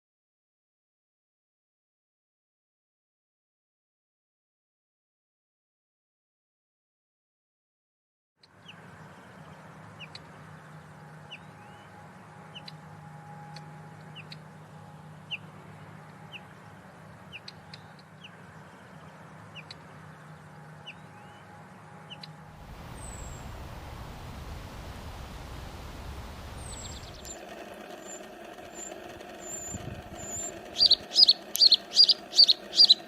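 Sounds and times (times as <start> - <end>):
bird chirping: 22.1 - 33.0
low hum: 22.5 - 33.0.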